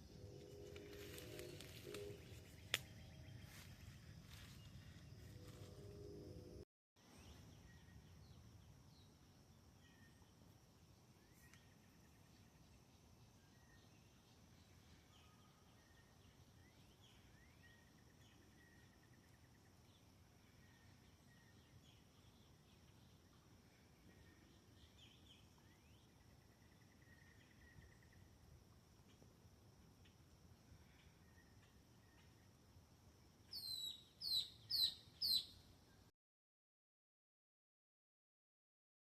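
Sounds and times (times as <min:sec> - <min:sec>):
birds chirping and trilling: 0:33.5 - 0:35.6.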